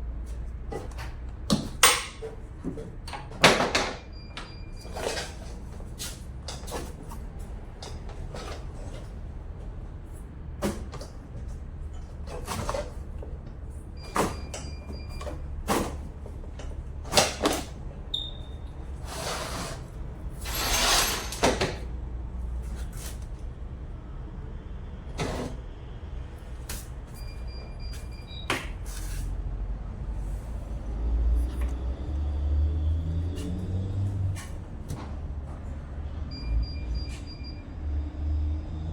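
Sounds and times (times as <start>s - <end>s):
tools knocking and clanking: 0.7s - 5.4s.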